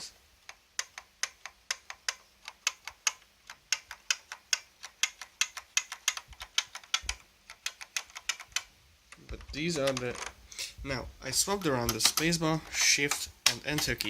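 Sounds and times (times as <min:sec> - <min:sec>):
clicky keyboard typing: 0:00.4 - 0:08.7.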